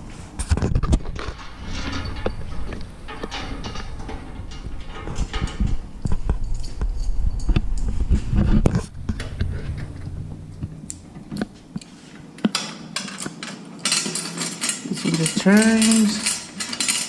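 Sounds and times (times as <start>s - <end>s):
metal parts clicking and knocking: 0.5s - 8.0s, 12.4s - 17.0s
low rumble: 1.1s - 11.7s.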